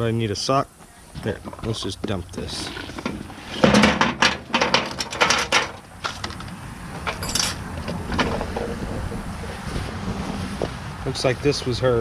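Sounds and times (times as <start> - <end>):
rustling: 0.7 - 10.8
small hard items clattering: 1.2 - 9.3.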